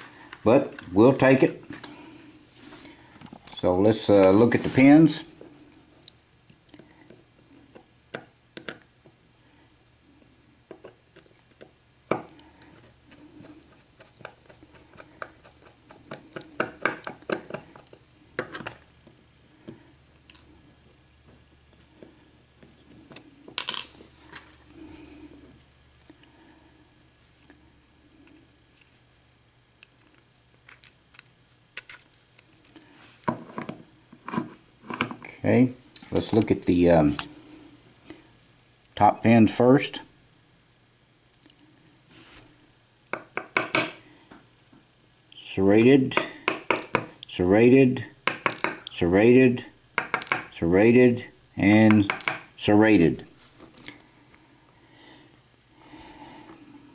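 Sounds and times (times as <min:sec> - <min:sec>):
small lock parts knocking: 0:48.3 - 0:48.9, 0:50.0 - 0:50.5, 0:52.0 - 0:52.5.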